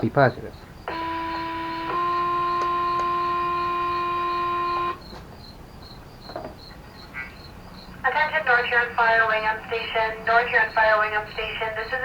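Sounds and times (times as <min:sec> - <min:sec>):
pager two-tone alert: 0:00.9 - 0:05.0.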